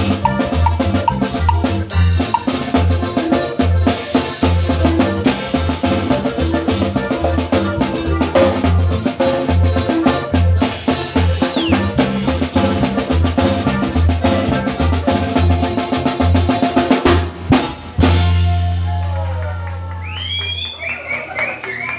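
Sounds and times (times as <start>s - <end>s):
drum kit: 0.0s - 19.6s
pulsing bass line: 0.0s - 20.0s
band music: 0.0s - 21.9s.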